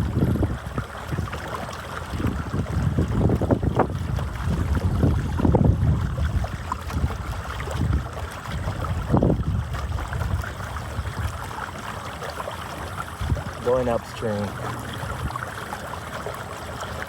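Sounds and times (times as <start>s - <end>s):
wind buffeting microphone: 0.0s - 1.4s, 2.0s - 11.6s, 13.0s - 15.6s
water rushing along kayak hull: 0.0s - 17.0s.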